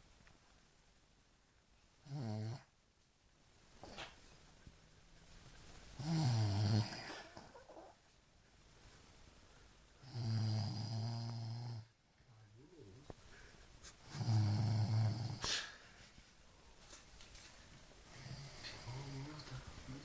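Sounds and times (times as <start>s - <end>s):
loud snores: 2.0s - 2.7s, 6.0s - 7.5s, 10.0s - 11.9s, 14.1s - 15.7s, 18.2s - 19.4s
quiet breathing: 4.3s - 20.0s.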